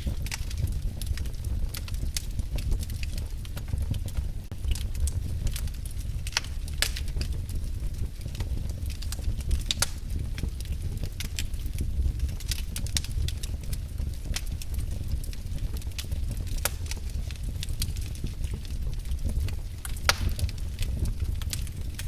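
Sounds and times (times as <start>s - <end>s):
fire crackling and popping: 0.0s - 22.0s
fire rumbling in a fireplace: 0.0s - 22.0s.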